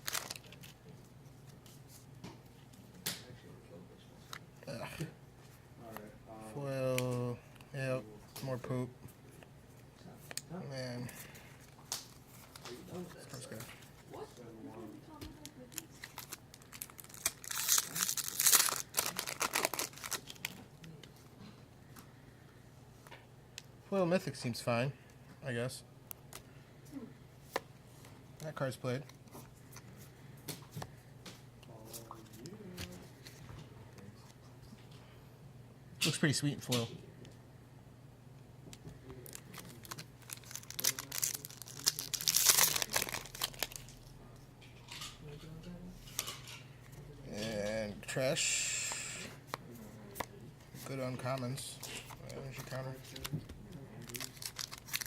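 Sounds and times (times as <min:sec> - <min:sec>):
foil wrapper crinkling and tearing: 0:00.0 - 0:00.8, 0:15.6 - 0:20.6, 0:39.1 - 0:44.1, 0:51.3 - 0:55.0.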